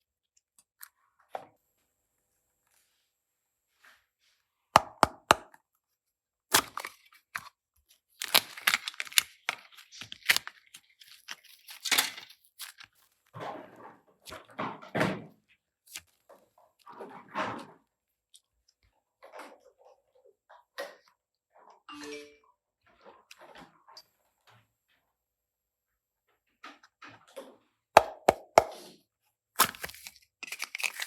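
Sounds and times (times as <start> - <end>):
rustling handling noise: 7.9 - 13.2, 29.6 - 31.0
clicks and crackles: 8.2 - 12.9.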